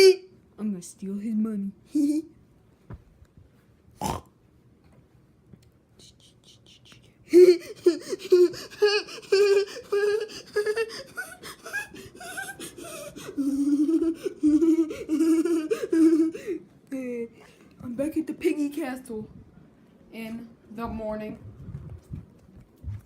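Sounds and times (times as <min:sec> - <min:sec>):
high-pitched voice laughing: 0:07.3 - 0:16.4.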